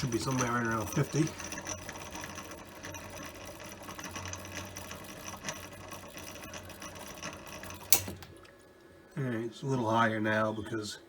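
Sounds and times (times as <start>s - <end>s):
water pump humming: 0.0s - 10.9s.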